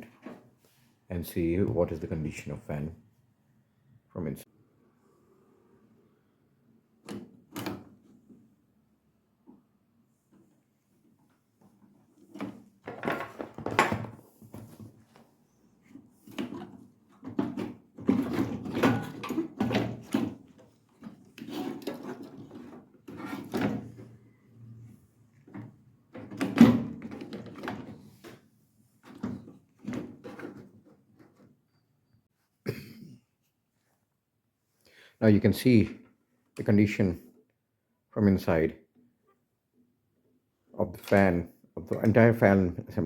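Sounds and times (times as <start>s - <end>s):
parts clattering and scraping: 12.2s - 24.4s.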